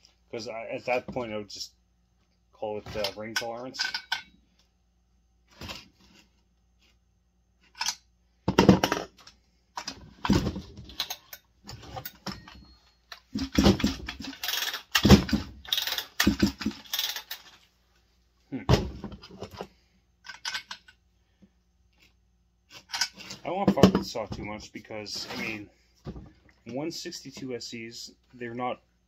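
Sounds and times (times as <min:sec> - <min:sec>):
metal tools clinking: 0:03.0 - 0:04.3.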